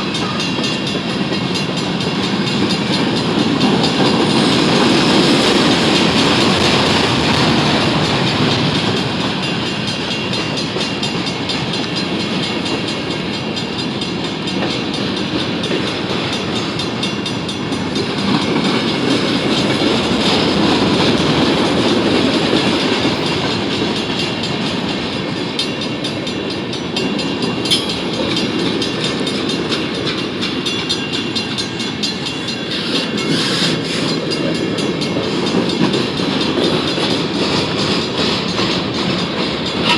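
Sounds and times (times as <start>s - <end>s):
freight train rumbling past: 0.0s - 39.9s
wheels clacking over rail joints: 0.0s - 39.9s.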